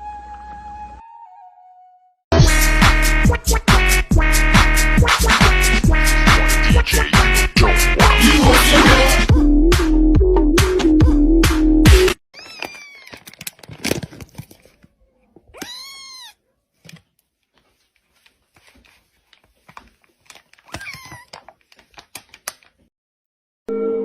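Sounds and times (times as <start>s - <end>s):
electronic music with heavy beat: 2.4s - 12.2s
cat meowing: 12.4s - 13.2s, 15.5s - 16.5s, 20.7s - 21.4s
small clicks and rustles: 12.4s - 15.7s, 16.8s - 22.9s.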